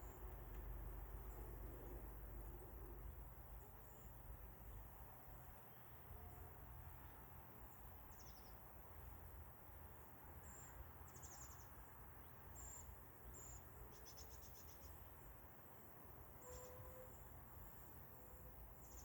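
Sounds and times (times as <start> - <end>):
low steady rumble: 0.0 - 5.5.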